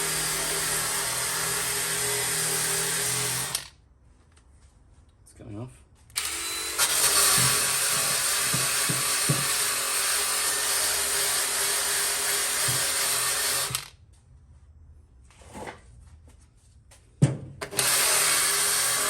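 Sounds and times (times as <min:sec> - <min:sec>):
power tool abrading rust off metal: 0:00.0 - 0:03.7, 0:06.2 - 0:13.9, 0:17.6 - 0:19.0.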